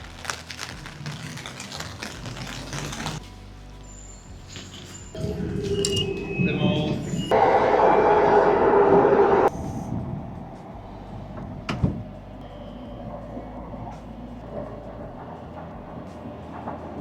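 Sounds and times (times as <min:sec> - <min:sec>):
low train rumble: 0:03.4 - 0:17.0
loud steady drone: 0:05.2 - 0:17.0.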